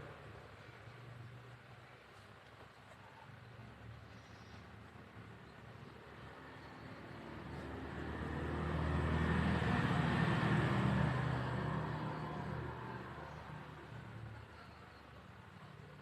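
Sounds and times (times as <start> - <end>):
motor vehicle passing by: 5.2 - 16.0.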